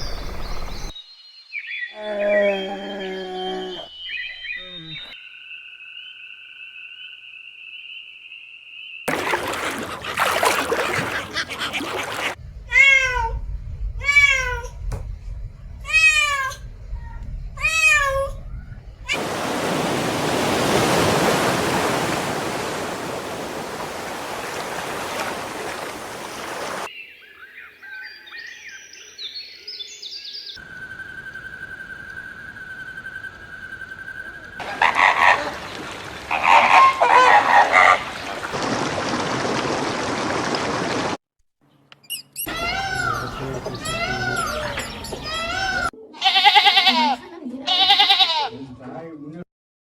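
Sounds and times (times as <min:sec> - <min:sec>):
cat meowing: 0:12.7 - 0:13.4, 0:14.0 - 0:14.8, 0:15.9 - 0:18.4, 0:42.5 - 0:48.5.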